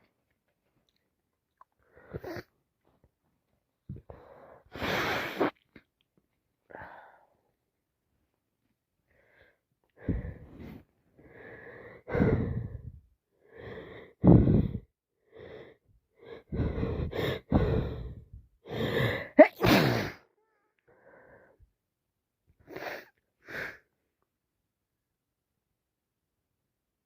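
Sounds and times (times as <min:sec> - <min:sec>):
wheezy breathing: 0:09.1 - 0:20.2
woman sneezing: 0:19.3 - 0:20.2.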